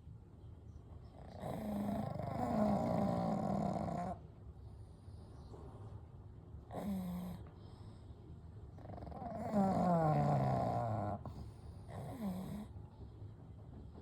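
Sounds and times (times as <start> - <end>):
dogs snoring: 1.1 - 4.3, 6.7 - 7.8, 8.7 - 12.8.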